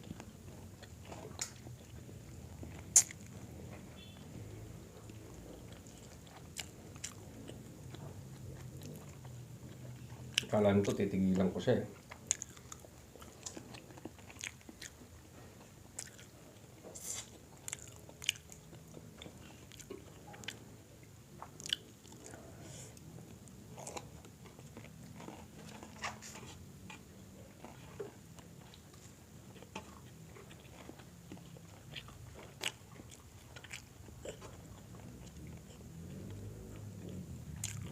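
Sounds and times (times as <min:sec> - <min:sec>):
person chewing crispy chicken: 0:00.0 - 0:03.5, 0:05.0 - 0:11.0, 0:12.0 - 0:20.6, 0:21.4 - 0:37.9
wet mouth clicks: 0:02.9 - 0:03.3.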